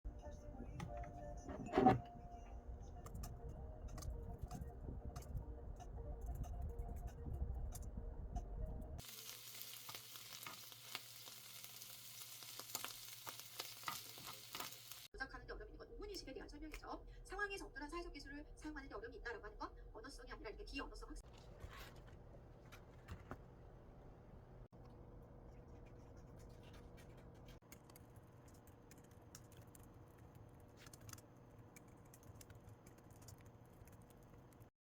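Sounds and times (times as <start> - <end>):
fried rice sizzling in a pan: 9.0 - 15.1
small clicks and scratches: 24.8 - 34.7.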